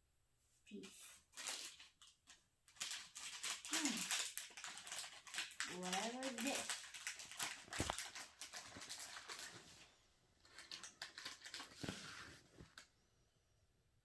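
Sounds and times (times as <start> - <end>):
plastic parts clicking and rustling: 1.3 - 9.6, 10.4 - 12.0.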